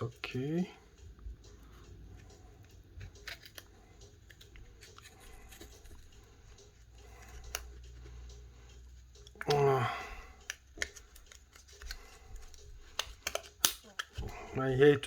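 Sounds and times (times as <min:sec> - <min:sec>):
plastic tool clicking and scraping: 0:02.2 - 0:08.1, 0:10.4 - 0:14.7.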